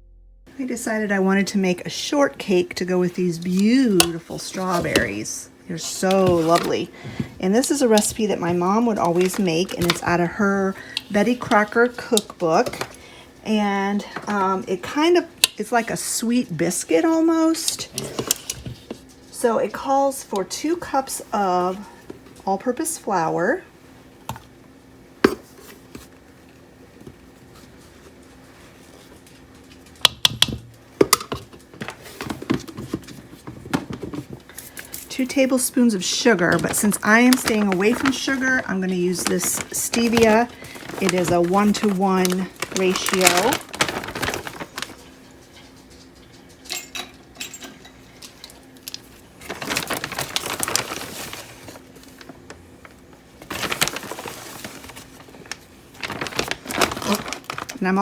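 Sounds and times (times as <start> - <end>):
faint steady hum: 0.0 - 58.0
rustling and scraping: 5.9 - 10.2, 36.4 - 46.7.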